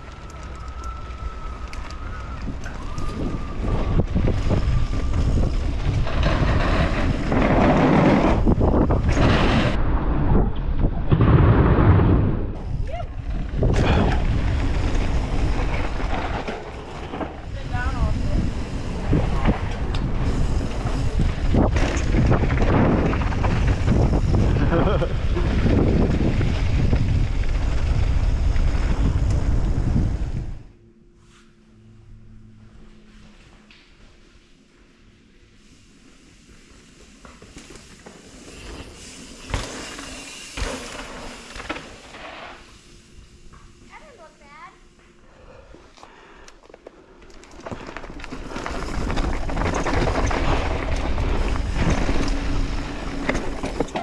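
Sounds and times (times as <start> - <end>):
bike tyres rolling on dirt: 0.0 - 30.8, 32.4 - 54.0
wind on microphone: 2.3 - 11.2
wind on camera microphone: 2.4 - 11.2, 17.4 - 30.7.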